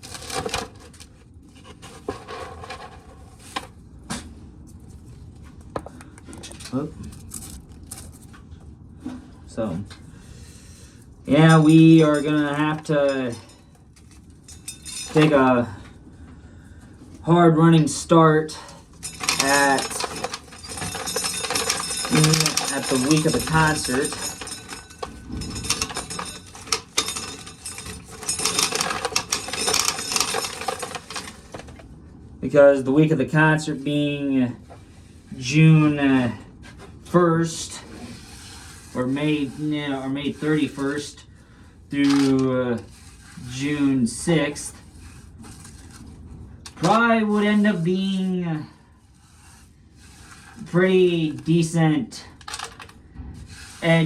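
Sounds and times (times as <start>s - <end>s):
kernels clicking: 11.3s - 15.5s, 18.8s - 31.8s, 42.0s - 43.1s, 52.4s - 53.9s.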